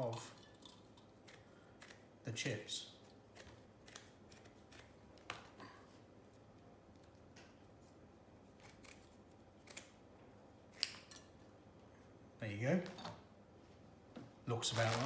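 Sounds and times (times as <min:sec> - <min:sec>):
scissors snipping: 0:03.4 - 0:05.3, 0:08.6 - 0:10.0.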